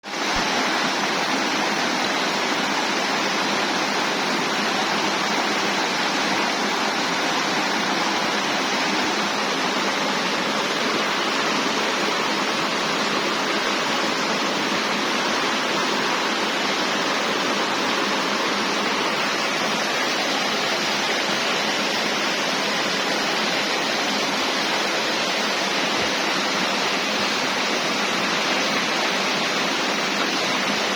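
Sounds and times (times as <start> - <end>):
waterfall rushing: 0.0 - 30.9.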